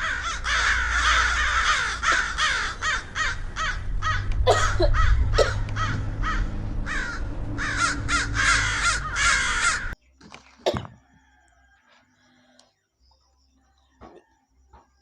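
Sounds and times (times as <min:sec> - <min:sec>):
crows cawing: 0:00.0 - 0:10.0
low hum: 0:00.0 - 0:10.0.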